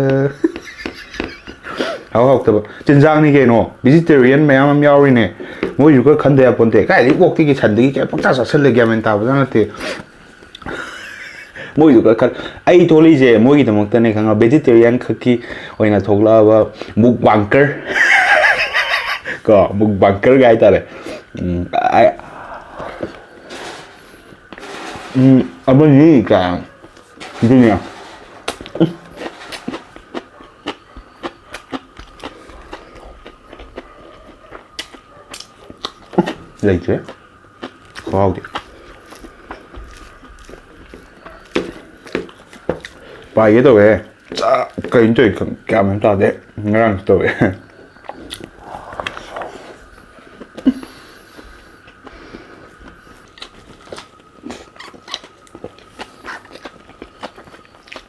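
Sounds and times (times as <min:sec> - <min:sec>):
person chewing: 0:28.4 - 0:43.4, 0:48.0 - 0:58.0
chewing with small clicks: 0:30.0 - 0:36.4, 0:52.8 - 0:58.0.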